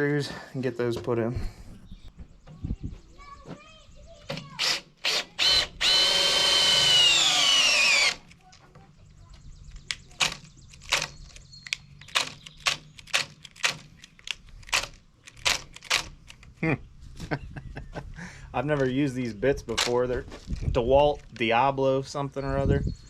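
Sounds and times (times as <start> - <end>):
cordless drill boring into wood: 4.6 - 8.3.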